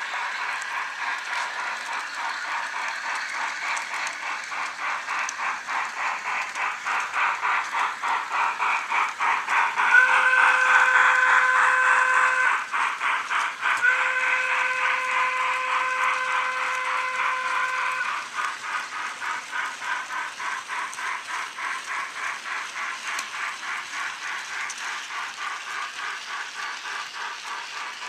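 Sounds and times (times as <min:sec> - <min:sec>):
steam exhaust chuffs: 0:00.0 - 0:28.0
model locomotive whistle blasts: 0:09.9 - 0:12.6, 0:13.8 - 0:18.1.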